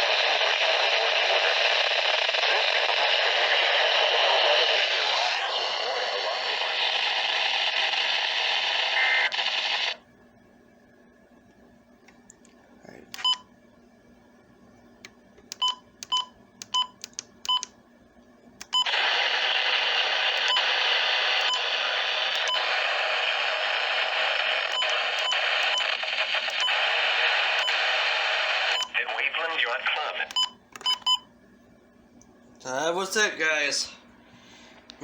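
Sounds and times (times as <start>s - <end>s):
faint radio hiss: 0.0s - 12.0s, 18.9s - 30.4s.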